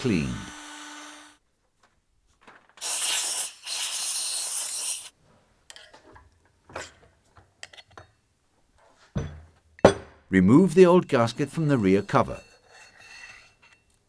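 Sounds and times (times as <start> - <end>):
hissing spray bursts: 2.8 - 5.1.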